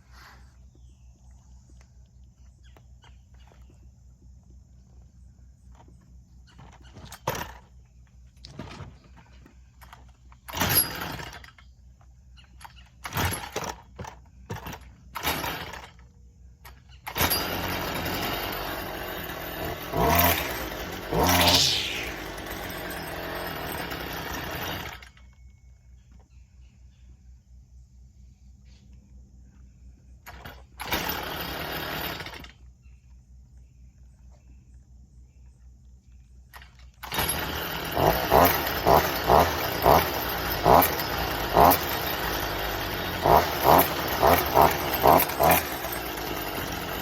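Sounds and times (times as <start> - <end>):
string trimmer pull-starting: 6.5 - 7.8, 8.4 - 11.8, 12.6 - 16.1, 16.7 - 25.3, 30.3 - 32.6, 36.6 - 47.0
string trimmer engine revving: 10.5 - 11.5, 15.2 - 15.9, 17.1 - 25.0, 30.8 - 32.4, 37.0 - 47.0.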